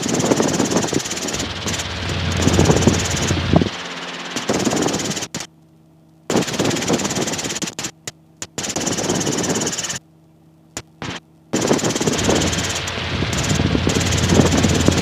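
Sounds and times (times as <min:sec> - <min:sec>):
helicopter engine and rotor: 0:00.0 - 0:05.5, 0:06.3 - 0:07.8, 0:08.7 - 0:10.0, 0:11.6 - 0:15.0.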